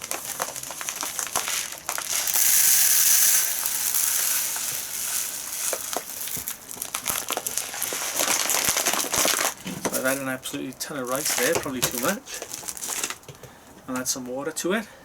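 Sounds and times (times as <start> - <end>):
rice pouring into a bowl: 0.0 - 10.2
plastic bag crinkling: 0.0 - 13.4.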